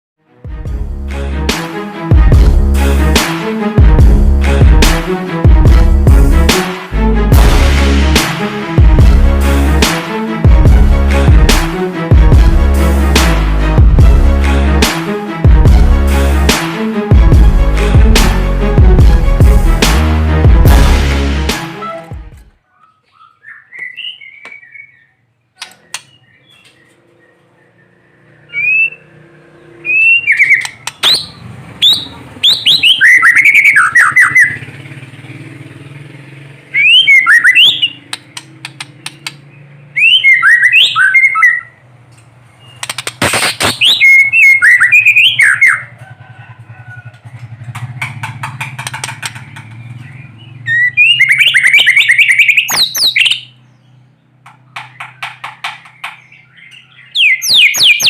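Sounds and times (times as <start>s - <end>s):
bird singing whistled notes: 22.7s - 25.2s, 25.8s - 34.7s, 36.8s - 38.1s, 39.4s - 41.8s, 43.8s - 45.9s, 50.0s - 54.0s, 56.2s - 58.0s
sharp clicks: 25.6s - 26.2s, 30.4s - 31.3s, 37.7s - 39.5s, 42.1s - 44.0s, 47.6s - 50.0s.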